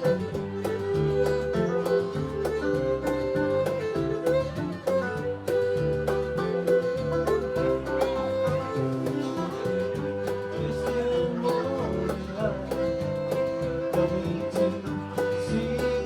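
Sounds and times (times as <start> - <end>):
bass: 0.0 - 16.0
fiddle playing long held notes: 0.0 - 16.0
guitars: 0.0 - 16.0
light percussion: 0.0 - 16.0.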